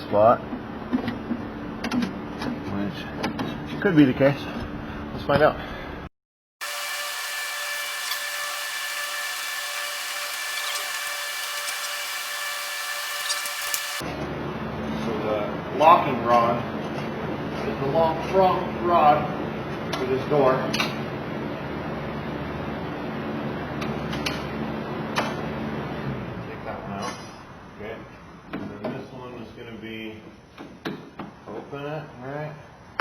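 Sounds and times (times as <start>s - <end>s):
small electric motor whining: 6.6s - 14.0s
low mechanical hum: 6.7s - 33.0s.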